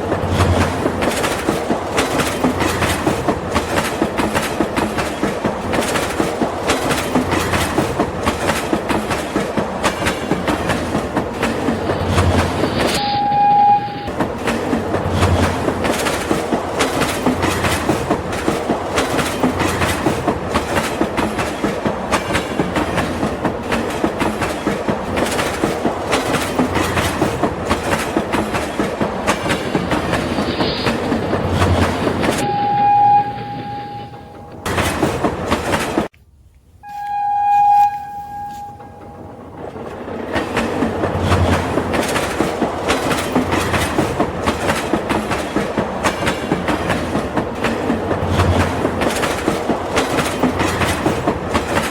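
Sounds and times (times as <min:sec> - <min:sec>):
toy train horn toot: 0:12.9 - 0:14.1, 0:32.4 - 0:34.7, 0:36.8 - 0:39.1.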